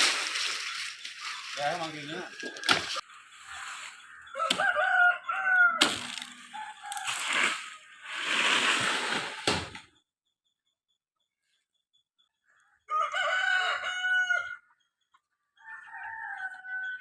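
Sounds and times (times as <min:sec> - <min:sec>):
rooster crowing: 0:01.3 - 0:07.8, 0:12.9 - 0:14.7, 0:15.6 - 0:17.0.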